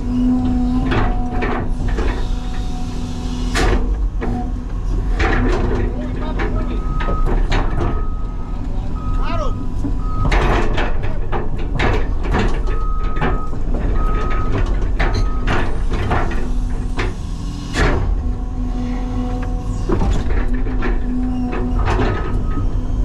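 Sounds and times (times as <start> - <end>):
hydraulic whine: 0.0 - 5.8
excavator diesel engine rumbling: 0.0 - 23.0
reversing alarm beeping: 6.7 - 10.4, 12.6 - 15.6.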